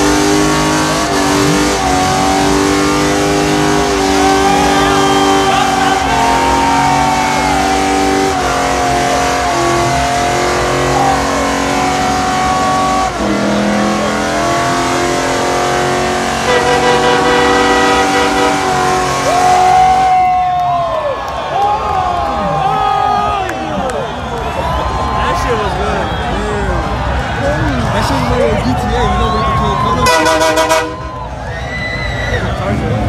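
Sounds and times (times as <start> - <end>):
car engine at high revs: 0.0 - 20.1.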